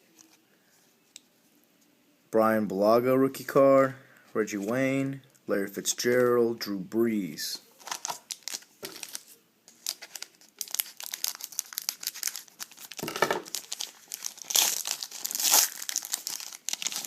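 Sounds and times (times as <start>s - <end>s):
wrapper crinkling and tearing: 7.8s - 17.0s.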